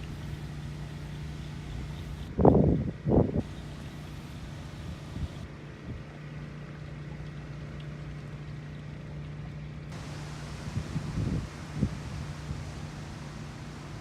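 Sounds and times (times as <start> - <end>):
low engine hum: 0.0 - 14.0
pressure washer spray: 10.0 - 14.0.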